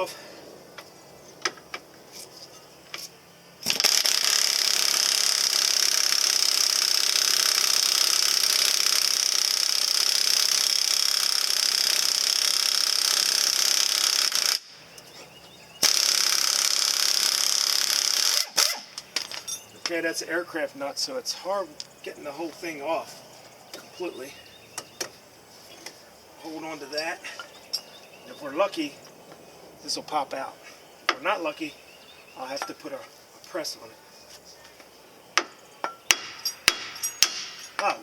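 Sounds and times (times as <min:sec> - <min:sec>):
impact wrench running: 0:03.6 - 0:14.7, 0:15.8 - 0:19.0.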